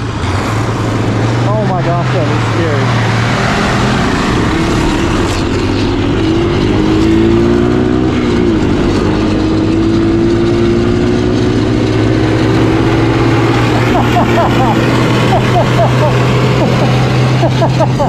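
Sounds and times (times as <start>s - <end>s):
engine humming: 0.0s - 18.0s
engine revving: 0.0s - 18.0s.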